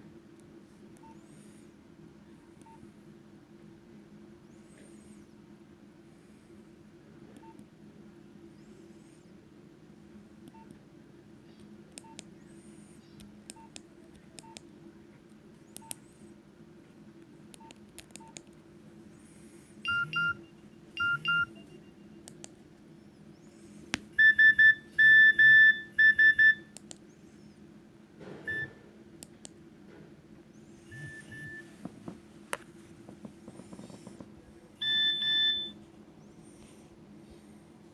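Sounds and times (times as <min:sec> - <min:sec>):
phone electronic beeps: 0:19.9 - 0:22.2, 0:24.2 - 0:26.7, 0:28.5 - 0:28.8, 0:30.9 - 0:31.7, 0:34.8 - 0:35.8.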